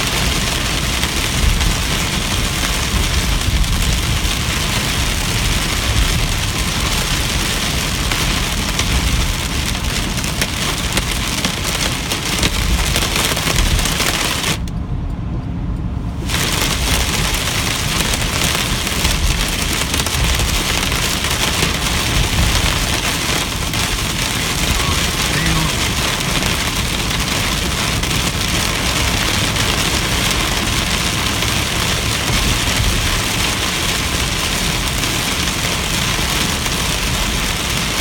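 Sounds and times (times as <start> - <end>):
heavy rain on car: 0.0 - 14.7, 16.0 - 38.0
road and engine rumble: 0.0 - 38.0.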